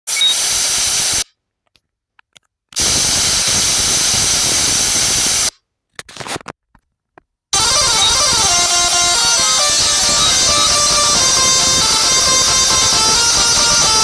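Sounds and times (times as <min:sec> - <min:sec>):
loud hissing bursts: 0:02.8 - 0:05.5.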